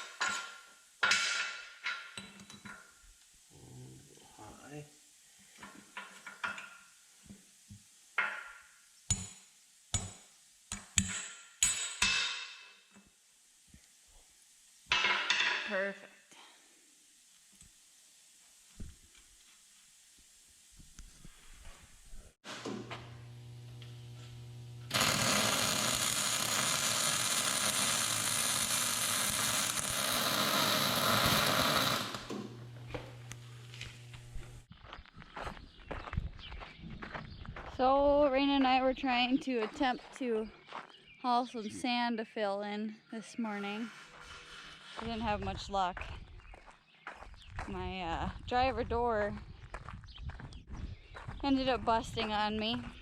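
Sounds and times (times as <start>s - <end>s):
power tool running: 22.5s - 34.7s.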